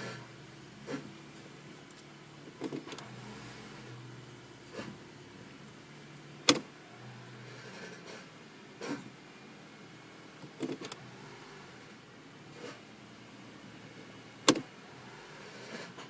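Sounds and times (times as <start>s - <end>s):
low steady hum: 0.0s - 16.0s
gear shift clunks and clicks: 0.8s - 3.1s, 6.2s - 6.7s, 10.4s - 11.0s, 14.4s - 14.7s.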